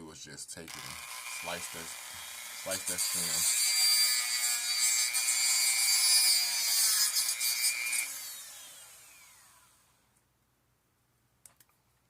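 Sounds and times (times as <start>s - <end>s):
rotary tool cutting plastic: 0.7s - 9.6s
rotary tool spinning down: 8.0s - 9.9s.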